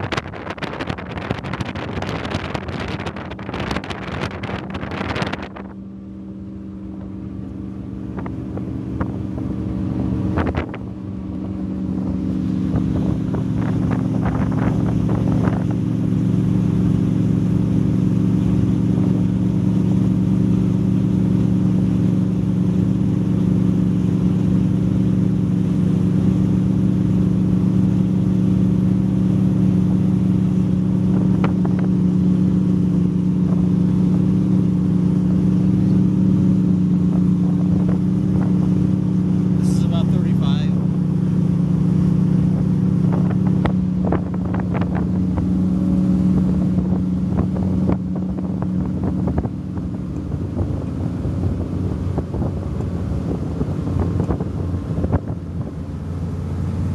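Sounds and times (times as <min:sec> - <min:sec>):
powerboat engines running: 0:00.0 - 0:56.9.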